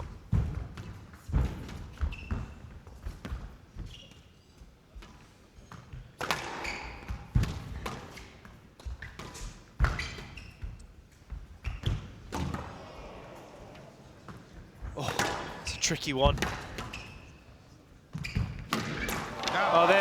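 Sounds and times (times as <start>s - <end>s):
shoes squeaking on court floor: 2.0s - 2.7s, 3.8s - 4.6s, 6.6s - 7.2s, 9.1s - 12.6s, 14.2s - 19.2s
squash ball hitting rackets and walls: 5.7s - 10.4s, 11.3s - 12.8s, 18.2s - 19.6s.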